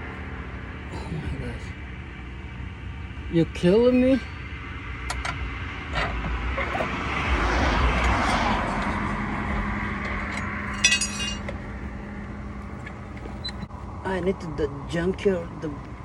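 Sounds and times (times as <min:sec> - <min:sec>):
car passing: 0:04.6 - 0:15.2
metallic clinking rattle: 0:10.3 - 0:11.5.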